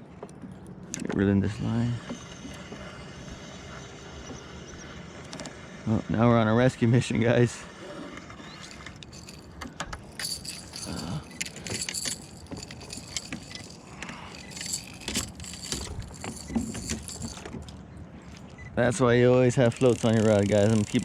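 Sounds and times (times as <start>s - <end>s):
fishing gear clinking: 8.5s - 18.6s, 19.4s - 21.0s.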